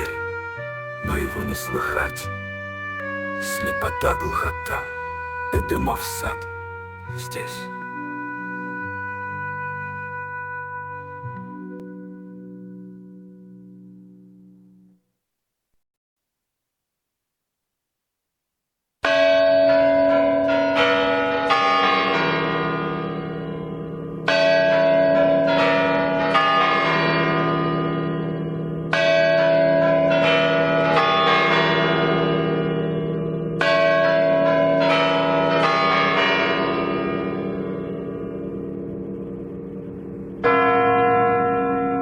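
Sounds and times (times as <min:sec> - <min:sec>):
church bells ringing: 0:00.0 - 0:02.4, 0:03.0 - 0:09.6, 0:19.0 - 0:42.0.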